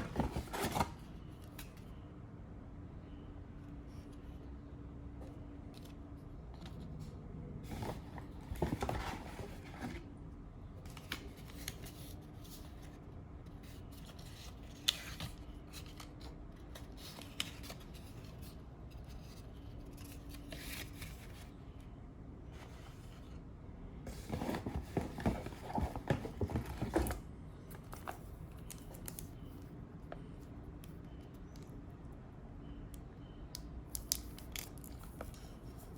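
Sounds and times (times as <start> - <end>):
cardboard and wrapping rustling: 0.0 - 1.1, 6.8 - 10.1, 24.1 - 28.4.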